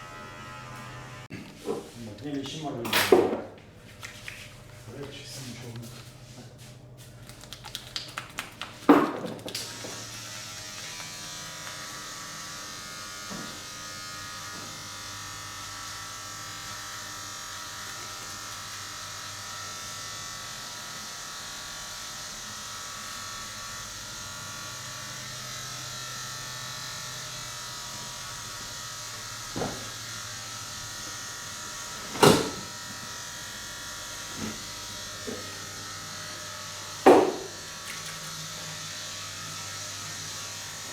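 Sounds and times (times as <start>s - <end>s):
small electric motor buzzing: 0.0s - 1.3s, 9.5s - 40.9s.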